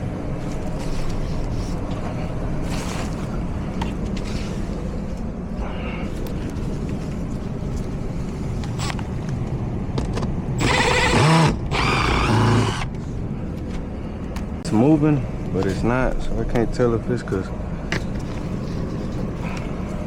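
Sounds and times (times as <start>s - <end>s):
steady low rumble: 0.0s - 20.0s
cordless drill running: 10.6s - 12.9s.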